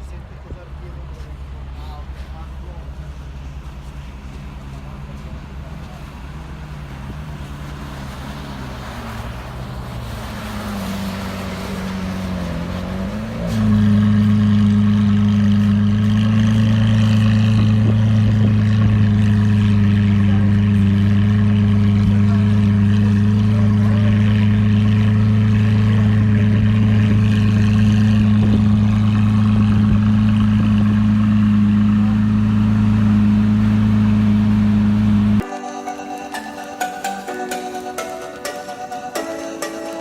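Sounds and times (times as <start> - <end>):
vehicle engine running steadily: 0.0 - 35.5.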